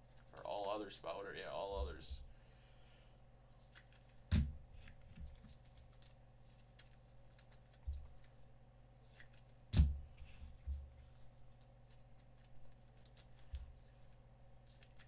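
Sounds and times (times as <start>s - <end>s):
faint steady hum: 0.0s - 7.3s
card packs rustling: 0.2s - 2.1s.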